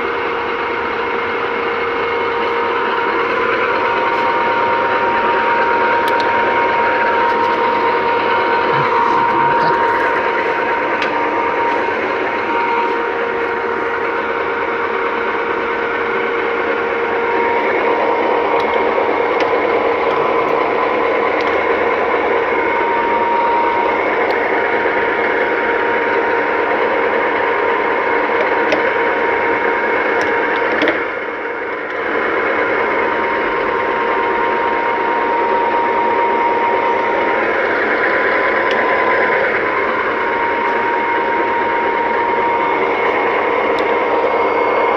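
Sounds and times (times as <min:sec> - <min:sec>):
gear whine: 0:00.0 - 0:44.9
metal lathe running: 0:00.0 - 0:44.9.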